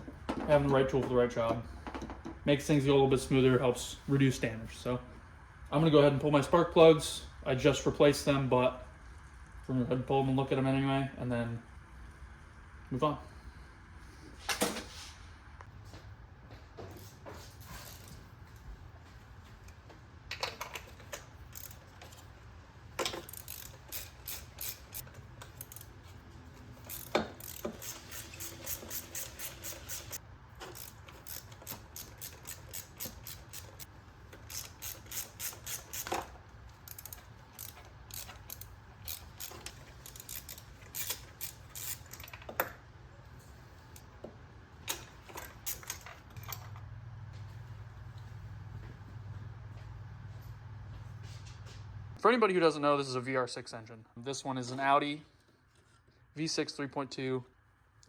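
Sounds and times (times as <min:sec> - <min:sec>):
socket ratchet clicking: 0:20.4 - 0:22.2, 0:23.0 - 0:26.0, 0:26.8 - 0:42.4.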